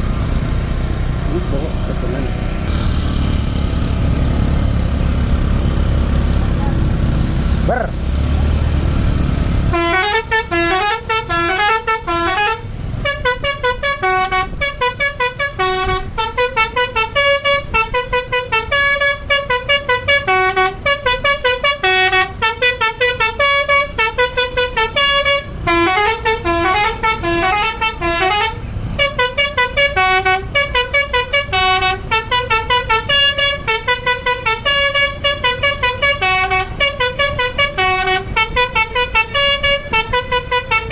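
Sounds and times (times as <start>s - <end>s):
bus engine idling: 0.0s - 40.9s
musical multi-tone bus horn: 9.6s - 40.9s.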